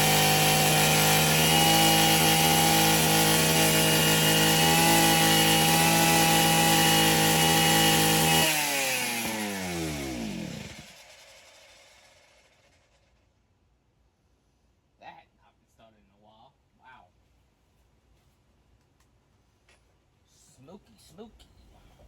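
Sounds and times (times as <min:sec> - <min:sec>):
small engine running and spinning down: 0:00.0 - 0:13.2.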